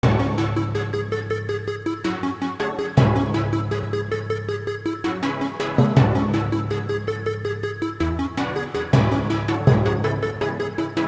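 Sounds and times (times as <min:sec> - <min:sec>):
electronic synth music: 0:00.0 - 0:11.0.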